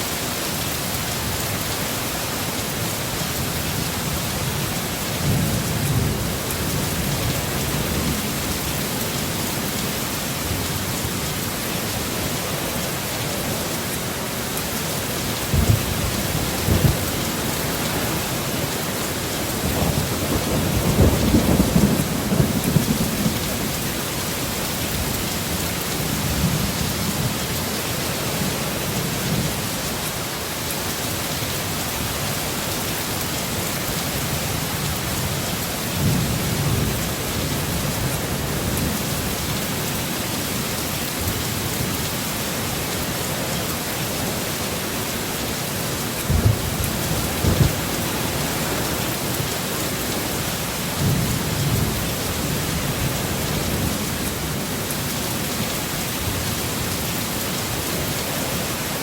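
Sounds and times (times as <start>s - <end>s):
heavy rain: 0.0s - 59.0s
thunder rumbling: 15.5s - 23.8s, 46.2s - 50.2s.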